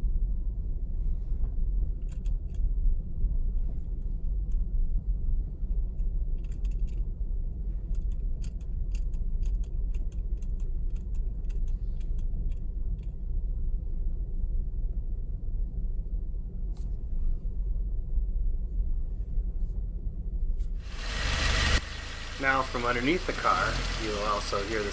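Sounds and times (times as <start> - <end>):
road and tyre rumble: 20.6 - 24.9.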